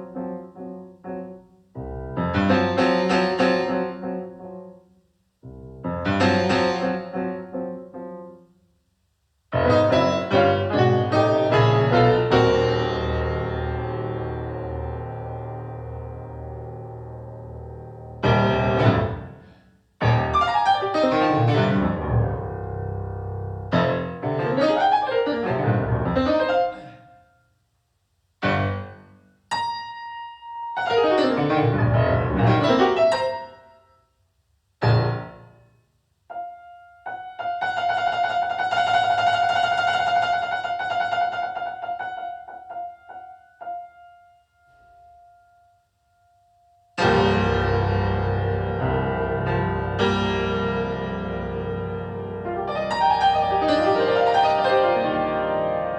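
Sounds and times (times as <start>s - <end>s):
keyboard chords: 47.0s - 55.9s.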